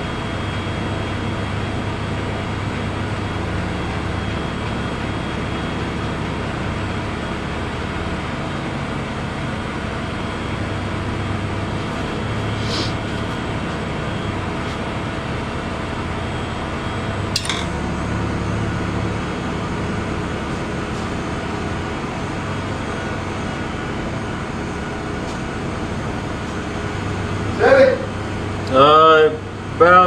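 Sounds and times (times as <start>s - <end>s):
engine humming: 0.0s - 29.8s
metallic clink: 17.4s - 17.8s.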